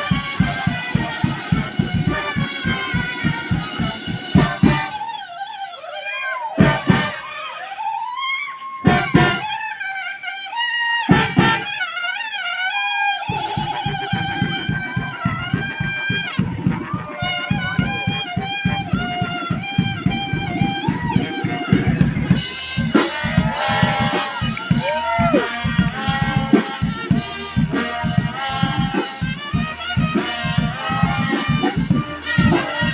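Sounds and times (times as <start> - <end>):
drum hits: 0.0 - 5.0, 6.6 - 7.2, 8.9 - 9.4, 13.3 - 32.9
brass band playing: 0.0 - 7.8, 8.8 - 32.9.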